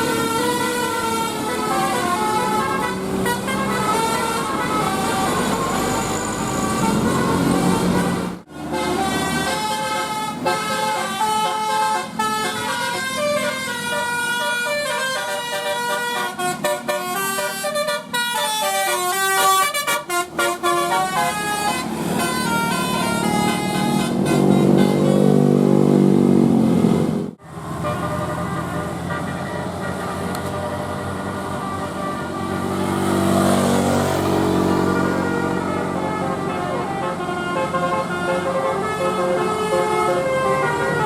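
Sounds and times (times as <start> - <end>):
musical air horn melody: 0.0 - 25.8, 27.7 - 41.0
deep loud horn tone: 0.0 - 26.3, 27.8 - 41.0.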